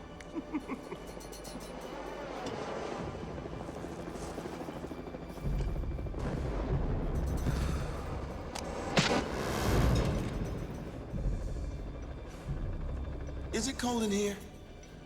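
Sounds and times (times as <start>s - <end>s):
fire and explosion: 5.9s - 11.6s.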